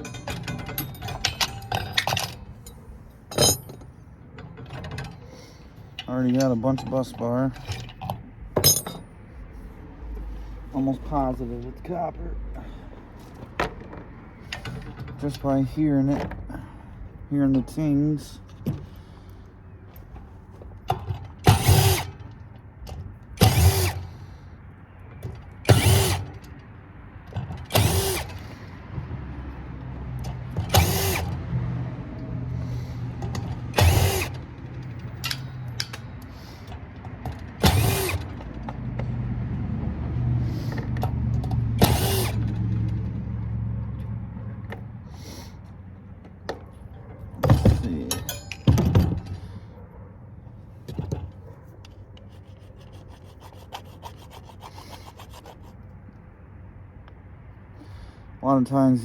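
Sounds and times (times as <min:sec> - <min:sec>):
metal pieces clinking: 0:00.0 - 0:03.8
mechanical whirring and ratcheting: 0:21.4 - 0:22.3, 0:23.4 - 0:24.0, 0:25.6 - 0:26.5, 0:27.6 - 0:28.4, 0:30.5 - 0:31.4, 0:33.2 - 0:36.0, 0:37.2 - 0:38.5, 0:40.6 - 0:43.0.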